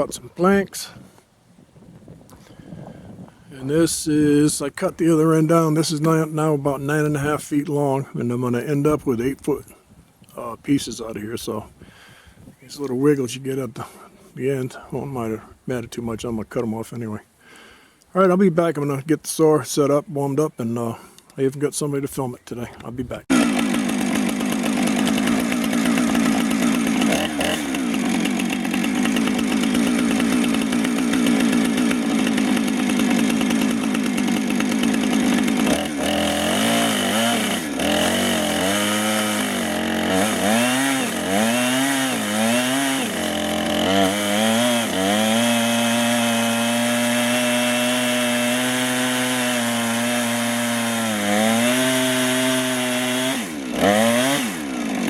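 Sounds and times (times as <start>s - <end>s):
chainsaw running at high revs: 23.3s - 55.0s.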